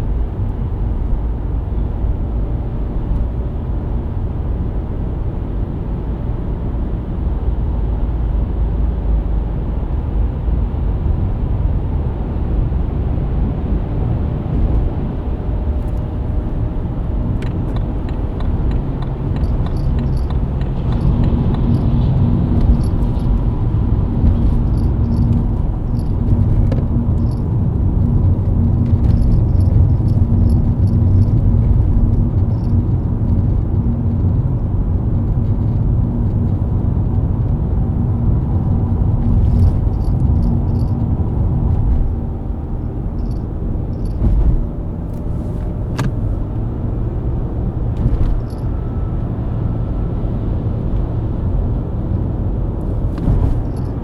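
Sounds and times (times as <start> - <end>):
tyre and road noise: 9.4 - 54.0
car engine droning at cruise: 11.9 - 54.0
faint regular ticking: 17.3 - 23.4, 43.2 - 44.4.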